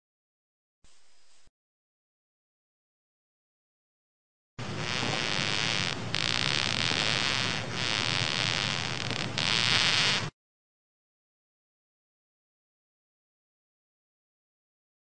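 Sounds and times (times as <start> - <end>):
dense steady hiss: 4.6 - 10.3
faint high whine: 4.6 - 10.3.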